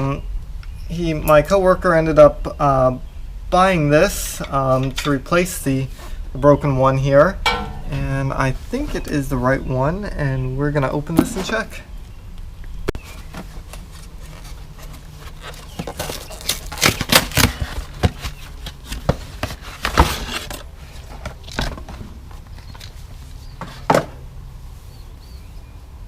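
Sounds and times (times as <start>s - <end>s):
sharp knocks: 7.4s - 8.1s
packaging rustling and crackling: 13.1s - 21.6s.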